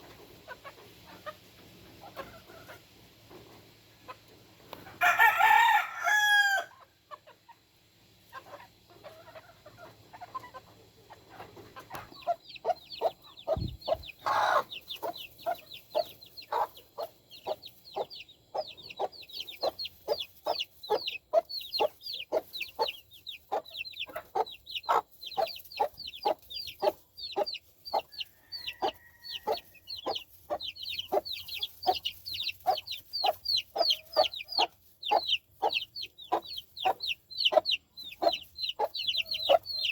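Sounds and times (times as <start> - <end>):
chickens clucking: 0.0 - 5.1, 6.7 - 39.9
rooster crowing: 5.0 - 6.8, 28.1 - 29.9.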